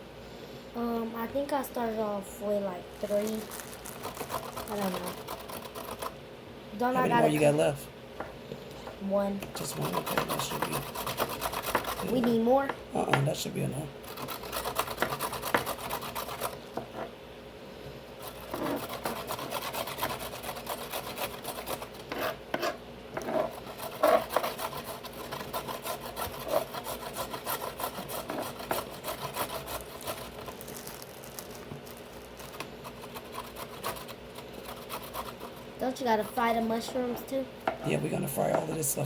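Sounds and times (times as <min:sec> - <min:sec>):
knife cutting vegetables on board: 0:09.6 - 0:12.4, 0:14.1 - 0:17.1, 0:18.2 - 0:30.6.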